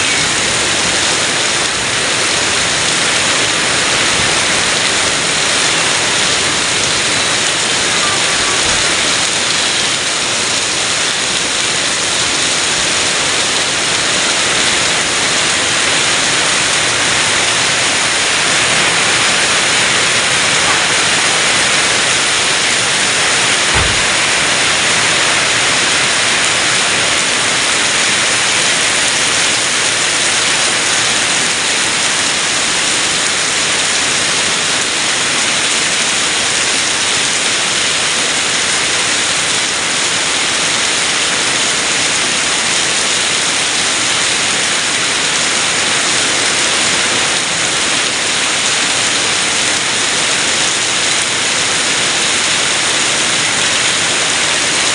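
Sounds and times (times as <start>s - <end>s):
heavy rain falling: 0.0s - 54.9s
low thud: 23.7s - 24.6s.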